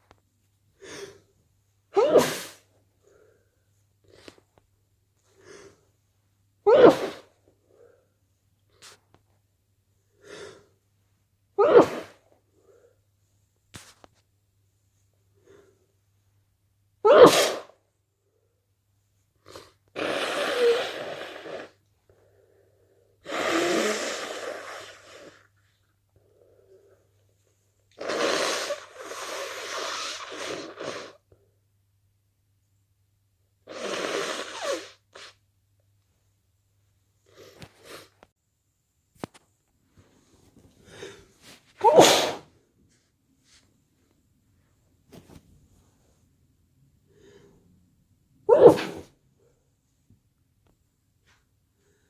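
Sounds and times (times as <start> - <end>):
person breathing: 0.8 - 1.3, 3.0 - 4.4, 10.0 - 10.8, 22.1 - 23.2, 39.9 - 41.7, 47.0 - 47.8, 51.7 - 52.0
person sneezing: 1.9 - 2.7, 6.6 - 7.4, 11.6 - 12.2, 17.0 - 17.8, 40.9 - 42.5, 48.5 - 49.2
person blowing nose: 2.0 - 2.7, 6.7 - 7.4, 11.6 - 12.2, 17.1 - 17.7, 19.4 - 21.9, 23.2 - 25.5, 27.9 - 31.2, 33.6 - 35.4, 37.3 - 38.2, 40.8 - 42.5, 48.5 - 49.1.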